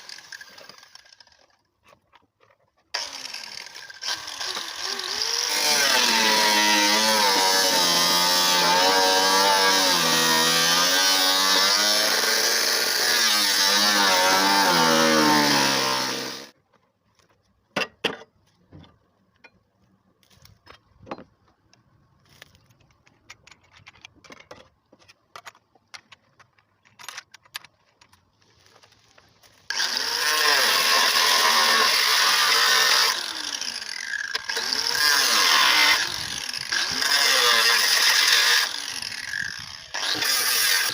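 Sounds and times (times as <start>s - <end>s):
electric power tool running: 0.0s - 1.2s, 3.0s - 16.5s, 29.7s - 40.9s
handling clicks and knocks: 22.5s - 28.3s.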